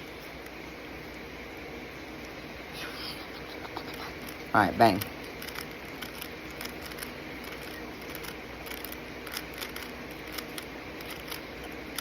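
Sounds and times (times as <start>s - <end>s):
fan humming: 0.0s - 12.0s.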